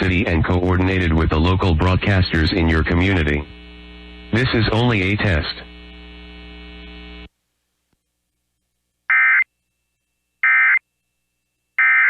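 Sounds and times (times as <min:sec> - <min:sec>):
steady electrical hum: 0:00.0 - 0:12.0.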